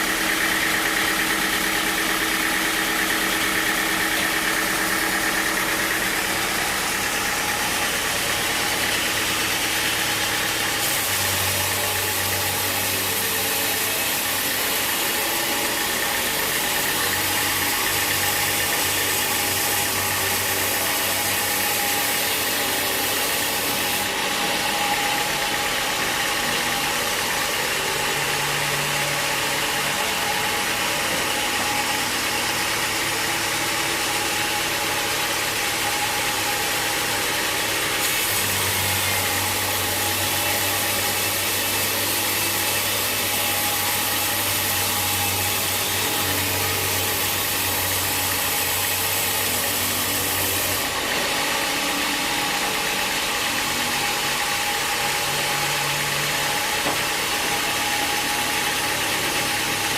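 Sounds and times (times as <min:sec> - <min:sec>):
sawmill machinery droning: 0:00.0 - 0:59.9.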